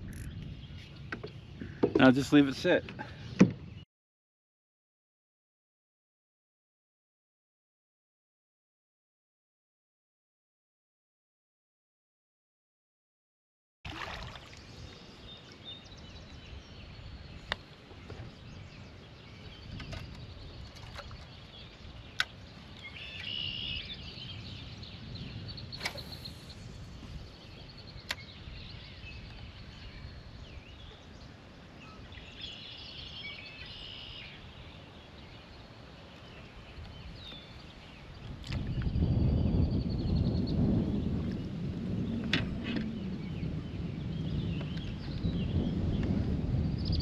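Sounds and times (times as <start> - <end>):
bird singing: 14.4 - 41.2.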